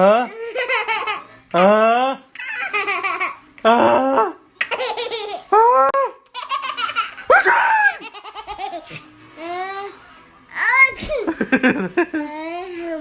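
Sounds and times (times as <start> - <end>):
baby laughing: 0.2 - 1.3, 2.4 - 4.0, 4.6 - 9.0.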